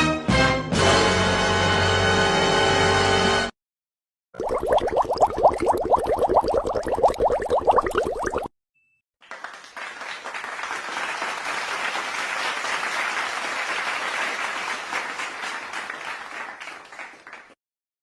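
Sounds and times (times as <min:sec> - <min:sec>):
crowd applauding: 0:09.2 - 0:17.6.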